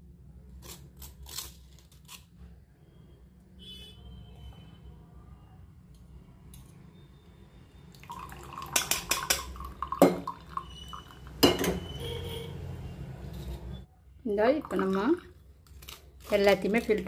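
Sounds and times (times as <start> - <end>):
metal utensils clinking: 8.5 - 10.3.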